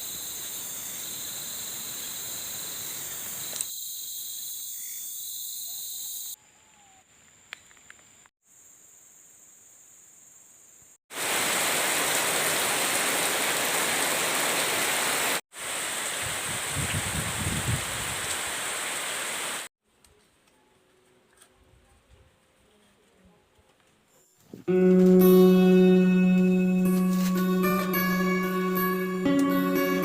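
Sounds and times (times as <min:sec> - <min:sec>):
hiss: 0:00.0 - 0:04.7
night insects trilling: 0:00.0 - 0:11.0.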